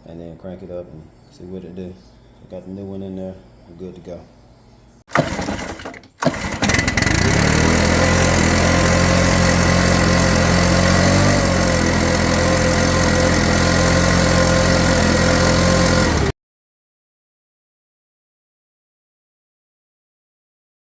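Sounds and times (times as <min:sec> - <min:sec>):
leaf blower engine running: 0:05.1 - 0:16.4.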